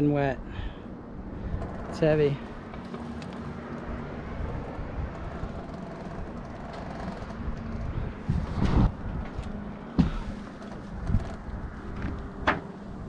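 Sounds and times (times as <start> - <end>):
low mechanical hum: 0.0 - 13.0
sharp knocks and thumps: 10.0 - 12.7.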